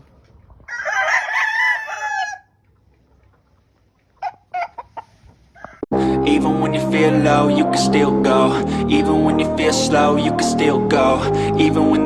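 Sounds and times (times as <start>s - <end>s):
rooster clucking: 0.6s - 5.9s
rooster crowing: 0.7s - 2.5s.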